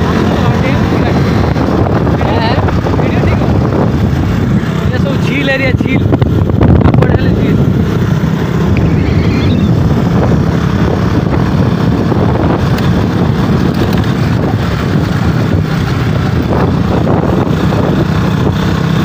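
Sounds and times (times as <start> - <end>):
motorcycle engine running: 0.0 - 19.0
wind buffeting microphone: 0.0 - 19.0.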